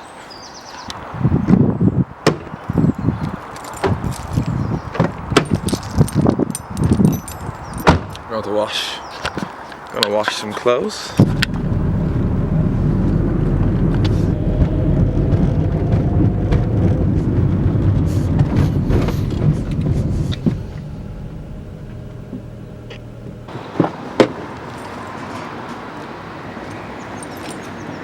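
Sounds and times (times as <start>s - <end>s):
car engine and road noise: 0.8s - 28.0s.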